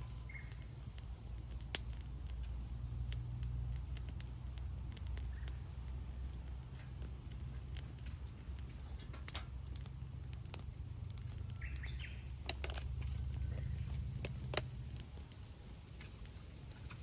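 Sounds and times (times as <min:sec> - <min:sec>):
campfire crackling and popping: 0:00.0 - 0:17.0.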